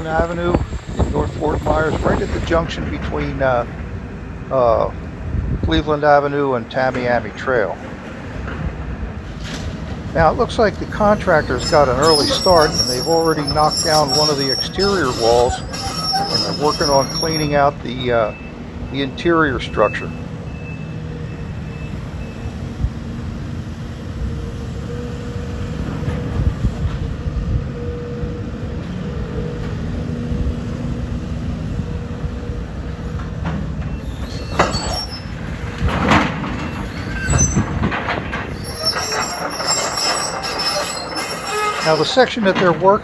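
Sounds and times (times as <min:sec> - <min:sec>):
high metal squeals: 0:00.0 - 0:02.6, 0:10.6 - 0:22.5, 0:33.9 - 0:35.4, 0:36.6 - 0:42.7
demolition machinery engine drone: 0:07.8 - 0:34.0.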